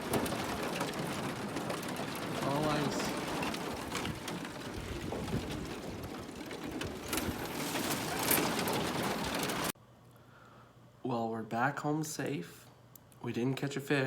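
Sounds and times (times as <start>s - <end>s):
ice crackling against boat hull: 0.0s - 9.7s.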